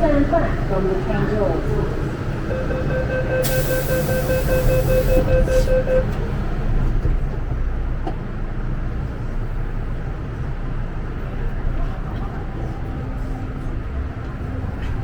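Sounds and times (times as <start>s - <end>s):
train carriage rumble: 0.0s - 15.0s
train door warning beeps: 2.4s - 6.2s.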